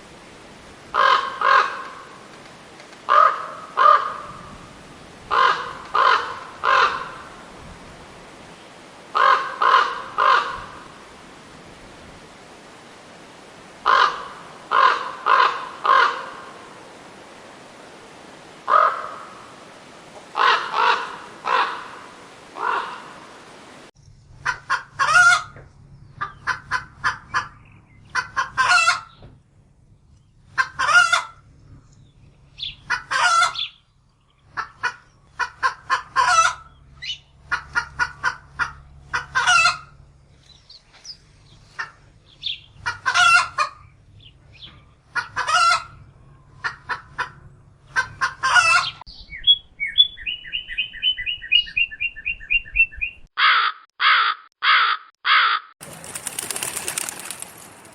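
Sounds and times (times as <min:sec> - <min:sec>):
crow cawing: 0:00.9 - 0:02.2, 0:03.1 - 0:04.5, 0:05.3 - 0:07.3, 0:09.1 - 0:10.9, 0:13.8 - 0:16.5, 0:18.7 - 0:19.5, 0:20.4 - 0:23.2, 0:53.4 - 0:55.7
chicken clucking: 0:24.4 - 0:25.6, 0:26.2 - 0:29.1, 0:30.6 - 0:31.4, 0:32.9 - 0:33.7, 0:34.6 - 0:36.7, 0:37.5 - 0:39.9, 0:42.8 - 0:43.8, 0:45.1 - 0:46.0, 0:46.6 - 0:49.0.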